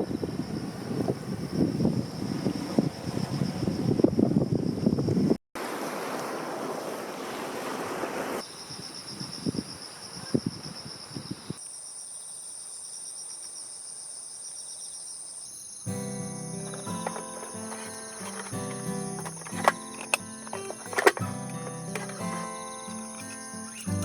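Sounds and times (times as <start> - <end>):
insects trilling: 8.4 - 24.0
music: 15.9 - 24.0.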